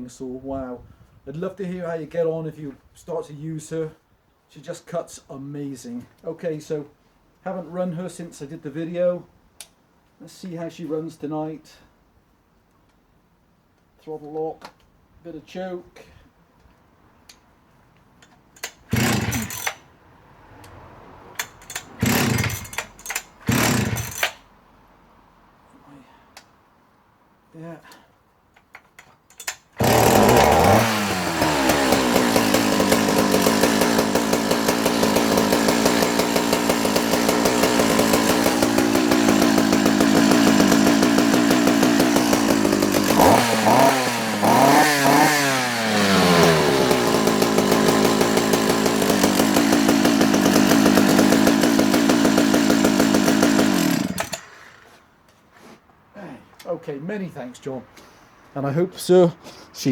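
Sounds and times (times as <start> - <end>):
starter clicks: 18.2 - 19.8, 21.4 - 24.4, 28.6 - 54.9
chainsaw engine revving: 18.6 - 19.9, 21.4 - 24.4, 29.8 - 55.0.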